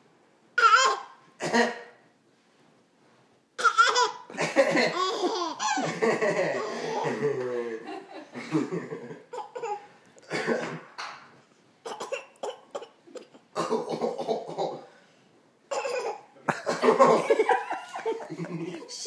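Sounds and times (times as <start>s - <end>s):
baby coughing: 0.6s - 1.9s, 3.6s - 5.8s, 9.3s - 10.9s, 11.8s - 14.9s, 15.7s - 16.8s
man coughing: 1.4s - 1.9s, 10.2s - 10.9s, 11.9s - 14.9s, 15.8s - 17.2s
laughter: 4.4s - 9.3s, 16.4s - 19.0s.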